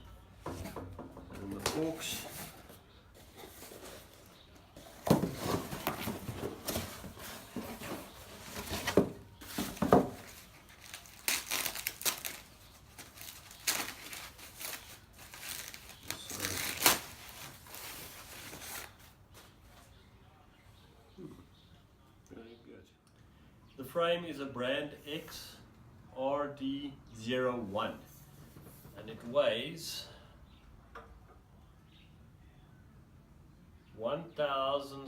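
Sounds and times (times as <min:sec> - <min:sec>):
packing material crinkling: 0:09.5 - 0:19.1.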